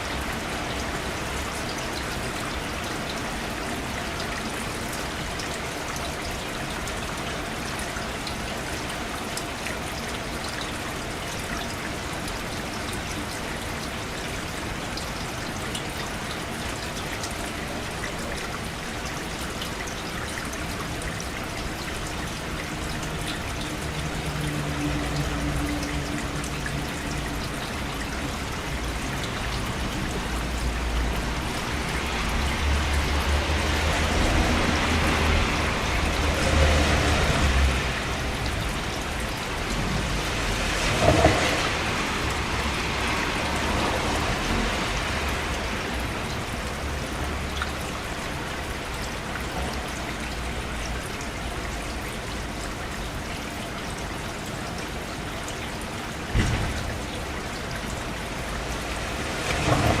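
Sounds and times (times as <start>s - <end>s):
steady rain falling: 0.0s - 60.0s
thunder rumbling: 59.4s - 60.0s.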